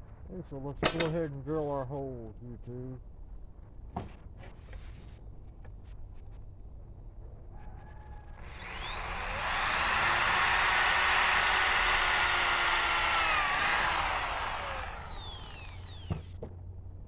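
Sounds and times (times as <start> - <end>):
electric drill boring wood: 8.4 - 16.4.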